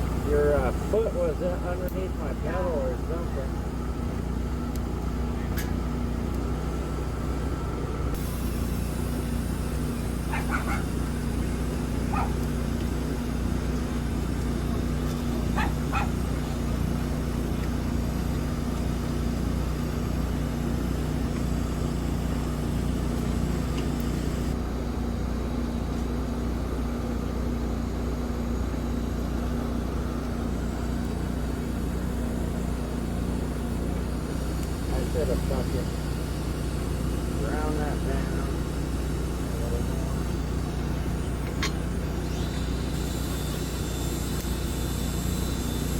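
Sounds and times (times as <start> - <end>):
welding arc hissing: 8.2 - 18.9, 31.0 - 45.9.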